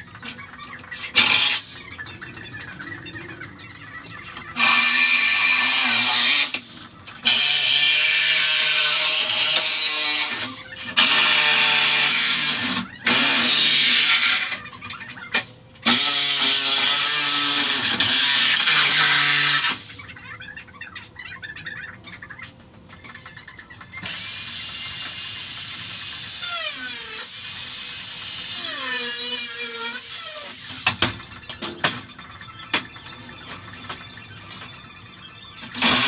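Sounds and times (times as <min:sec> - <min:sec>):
handheld power tool on metal: 0:01.1 - 0:01.8, 0:04.6 - 0:14.6, 0:15.4 - 0:20.0, 0:24.0 - 0:31.0, 0:35.8 - 0:36.0.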